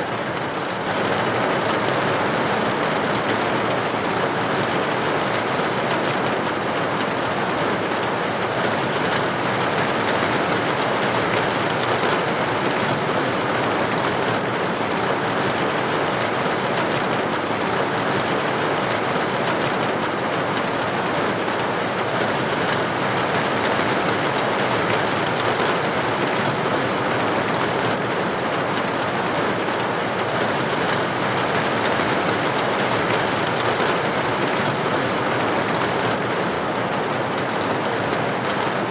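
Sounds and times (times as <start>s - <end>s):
rain on a window pane: 0.0s - 38.9s.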